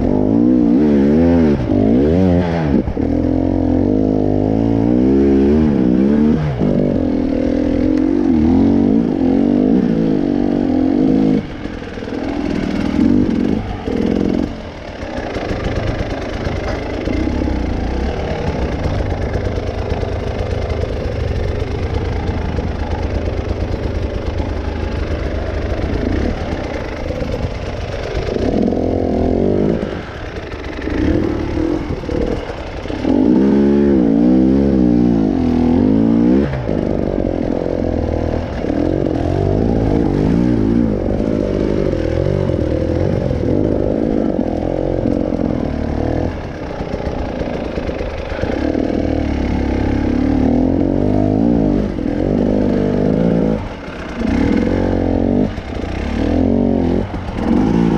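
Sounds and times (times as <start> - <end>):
motorcycle engine revving: 0.0 - 57.9.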